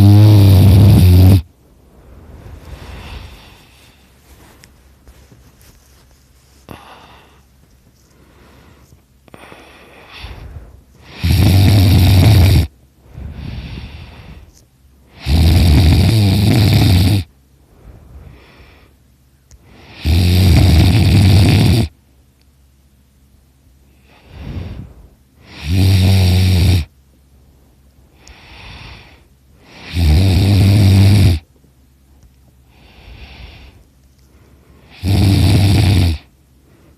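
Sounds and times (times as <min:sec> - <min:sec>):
person snoring loudly: 0:00.0 - 0:01.5, 0:09.4 - 0:14.4, 0:15.1 - 0:17.3, 0:19.7 - 0:21.9, 0:24.1 - 0:26.9, 0:28.4 - 0:31.4, 0:34.9 - 0:36.3
soft breaths: 0:00.0 - 0:21.7, 0:23.7 - 0:25.7, 0:27.0 - 0:30.0, 0:30.6 - 0:36.9.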